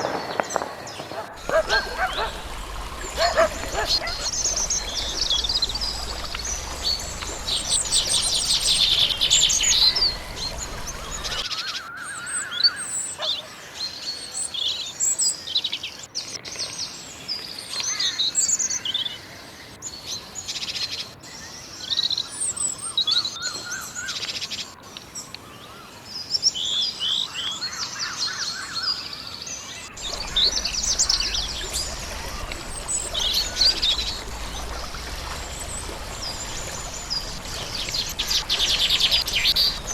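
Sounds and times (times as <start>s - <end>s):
songbirds chirping and singing: 0.0s - 11.5s, 29.9s - 39.9s.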